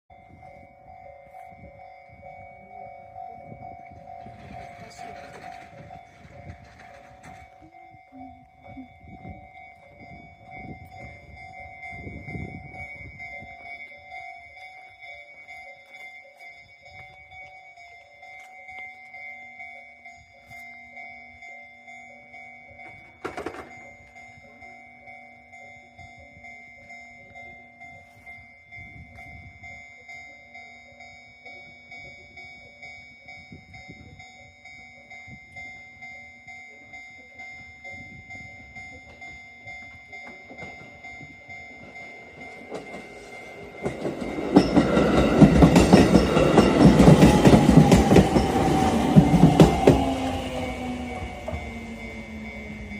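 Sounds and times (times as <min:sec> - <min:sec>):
electric train passing: 0:00.1 - 0:52.9
level crossing alarm ringing: 0:00.1 - 0:52.9
train wheels rumbling on rails: 0:01.5 - 0:14.7, 0:21.4 - 0:29.9, 0:36.6 - 0:52.9.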